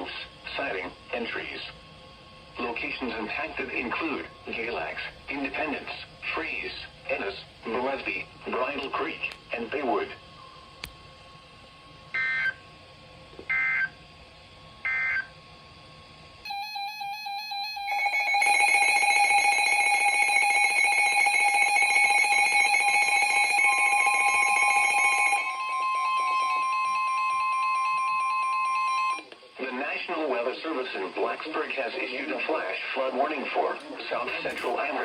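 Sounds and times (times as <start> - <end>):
harsh electronic attention tone: 16.5 - 29.2
steady electronic tone: 16.5 - 29.2.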